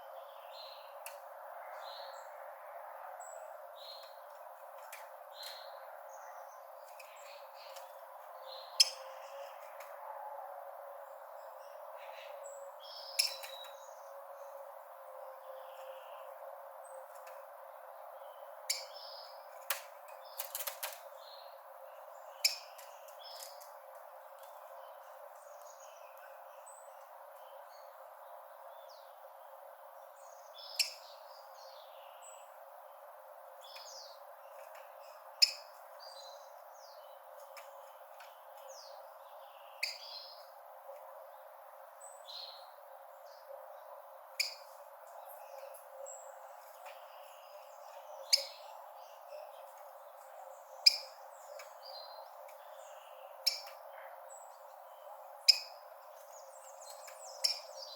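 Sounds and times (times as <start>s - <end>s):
sparrow chirping: 5.3s - 9.7s, 11.4s - 14.1s, 18.3s - 23.8s, 30.0s - 32.6s, 33.6s - 40.6s, 44.2s - 57.9s.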